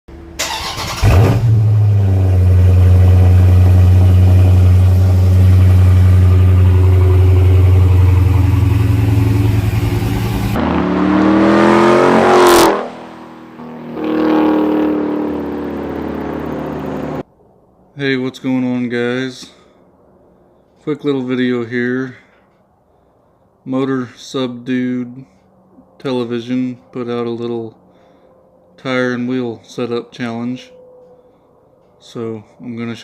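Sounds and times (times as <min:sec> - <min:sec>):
car engine starting and revving: 0:00.4 - 0:17.2.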